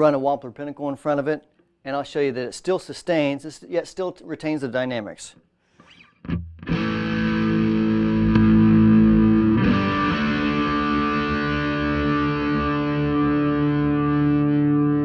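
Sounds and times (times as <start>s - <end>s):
distorted electric guitar chords: 5.9s - 15.0s.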